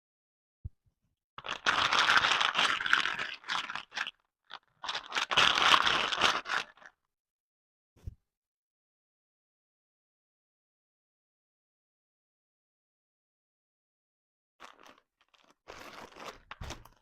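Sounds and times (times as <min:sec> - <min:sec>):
packaging crinkling: 0:14.6 - 0:17.0.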